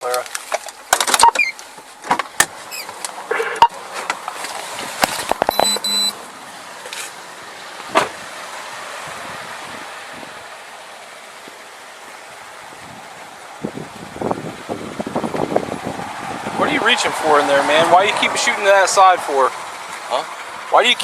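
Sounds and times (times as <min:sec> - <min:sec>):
short electronic beep: 0:05.5 - 0:06.2.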